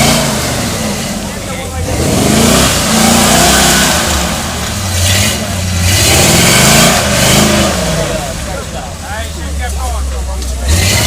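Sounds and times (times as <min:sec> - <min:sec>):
off-road vehicle engine revving: 0:00.0 - 0:11.0.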